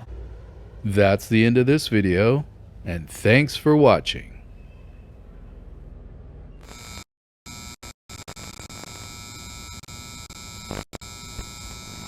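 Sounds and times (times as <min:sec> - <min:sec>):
harsh electronic buzz: 0:06.6 - 0:12.0.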